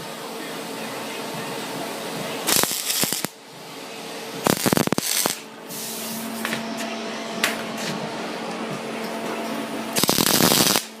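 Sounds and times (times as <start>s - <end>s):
welding crackle: 2.5s - 3.4s, 4.4s - 5.5s, 10.0s - 11.0s.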